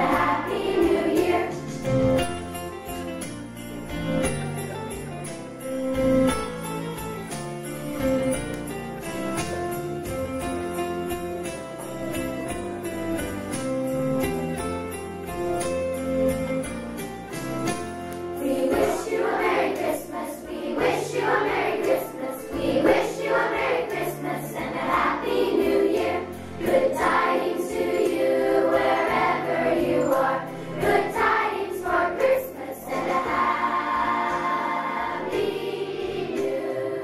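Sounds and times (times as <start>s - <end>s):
children's choir singing: 0.0s - 2.3s, 18.3s - 37.0s
instrumental accompaniment: 0.0s - 37.0s.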